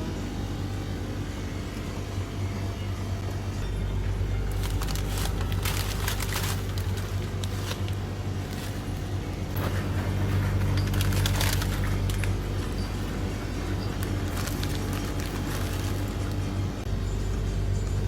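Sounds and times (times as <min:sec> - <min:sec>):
low mechanical hum: 0:00.0 - 0:18.0
rustling and clicking handling noises: 0:04.4 - 0:16.8.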